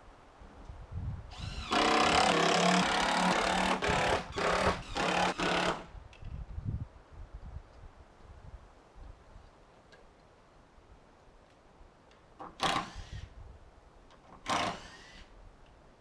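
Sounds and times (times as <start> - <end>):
drill driving screws into wood: 1.3 - 5.9, 12.4 - 13.3, 14.3 - 15.3.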